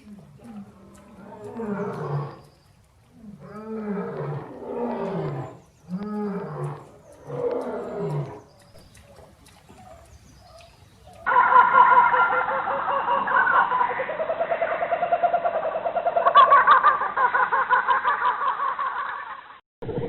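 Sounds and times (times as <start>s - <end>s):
lion roaring: 0.1s - 2.4s, 3.2s - 8.4s.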